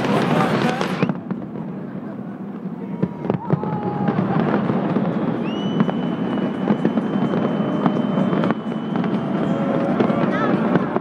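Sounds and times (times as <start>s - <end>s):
fireworks bangs and crackles: 0.0s - 11.0s
long high whistle: 4.6s - 10.1s.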